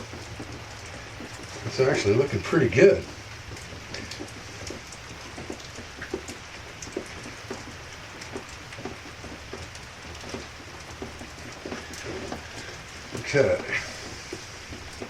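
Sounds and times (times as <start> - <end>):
drops ticking close by: 0.0 - 15.0
steady rain falling: 0.0 - 15.0.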